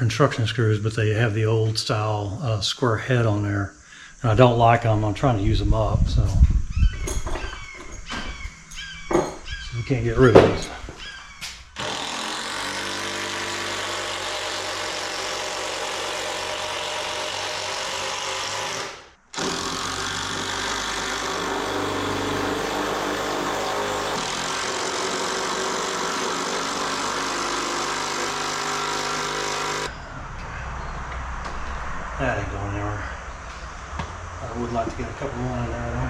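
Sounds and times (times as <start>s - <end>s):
power driver driving screws: 11.8s - 29.9s.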